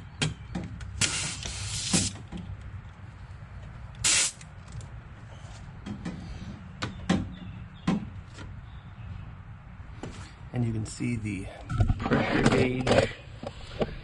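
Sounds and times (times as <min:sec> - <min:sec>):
refrigerant hissing: 0:01.0 - 0:02.2.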